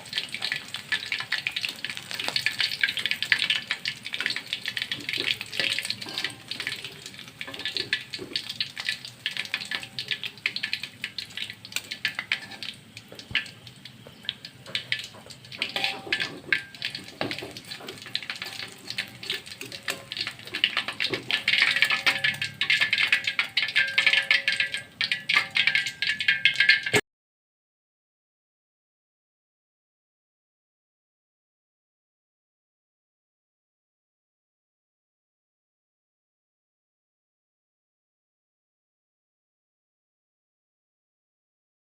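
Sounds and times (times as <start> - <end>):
food sizzling in hot oil: 0.0 - 27.0.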